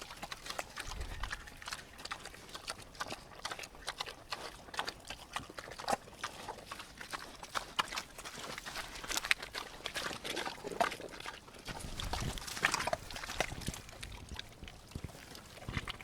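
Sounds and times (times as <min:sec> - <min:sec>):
pigs chewing and smacking: 0:00.0 - 0:16.0.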